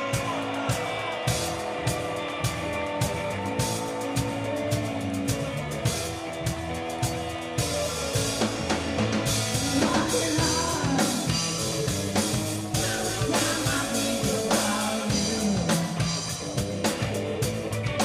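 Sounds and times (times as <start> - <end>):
drum kit beat: 0.0 - 18.0
guitar: 0.0 - 18.0
person singing: 7.8 - 17.3.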